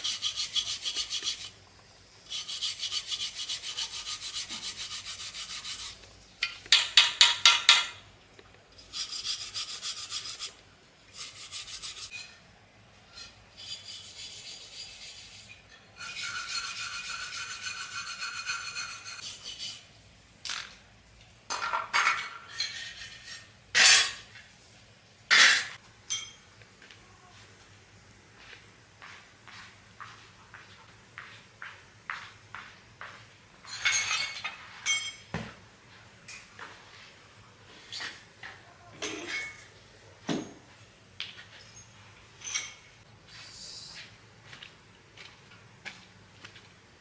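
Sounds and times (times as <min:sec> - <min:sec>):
hand sanding rasping strokes: 0:00.0 - 0:01.6, 0:02.2 - 0:06.1, 0:08.8 - 0:12.1, 0:13.6 - 0:19.9.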